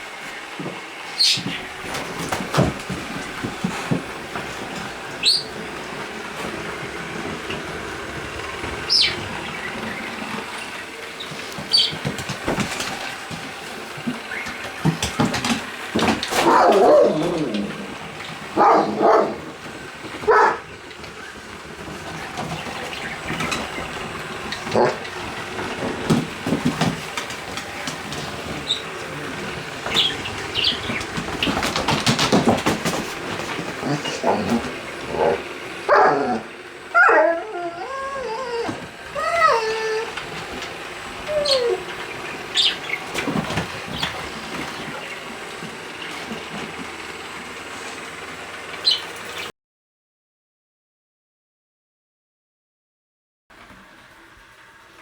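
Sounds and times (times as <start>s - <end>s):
robot vacuum whirring: 0.1s - 49.3s
clattering knocks: 1.4s - 35.7s
high squeaky chirps: 11.7s - 12.0s, 41.3s - 43.1s.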